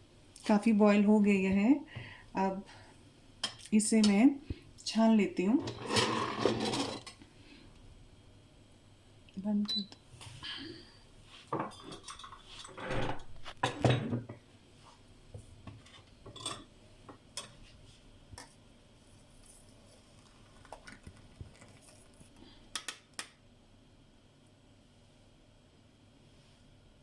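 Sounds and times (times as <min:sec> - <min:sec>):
kitchen utensils clattering: 0:05.6 - 0:07.2, 0:11.6 - 0:14.3, 0:15.9 - 0:16.7.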